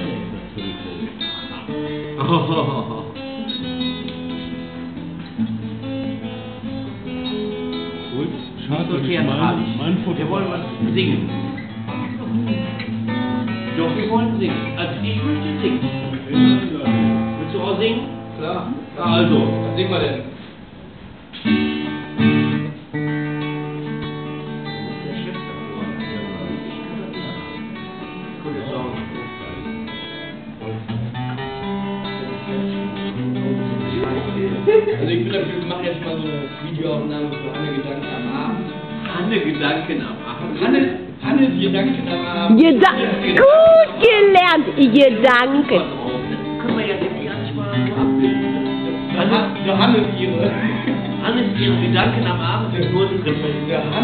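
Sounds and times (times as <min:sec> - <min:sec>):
guitar strumming: 0:00.0 - 0:54.0.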